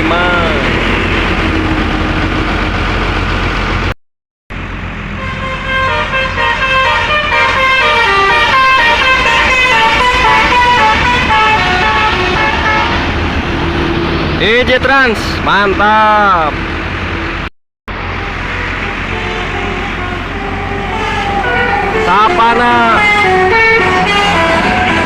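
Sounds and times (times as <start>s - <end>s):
bus horn playing melody: 5.1s - 13.1s, 18.2s - 25.0s.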